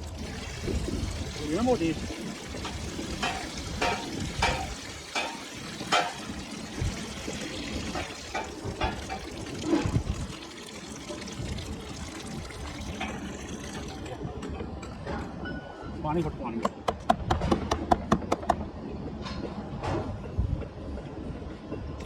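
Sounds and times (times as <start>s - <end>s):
water pouring and splashing: 0.0s - 14.4s
sharp clicks or knocks: 16.6s - 18.6s.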